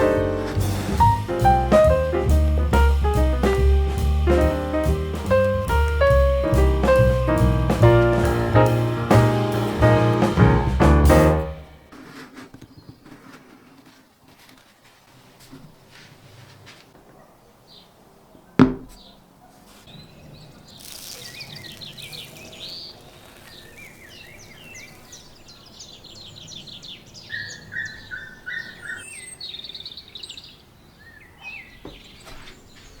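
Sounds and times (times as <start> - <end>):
sharp knock: 18.6 - 19.0
birds chirping and singing: 21.3 - 33.0.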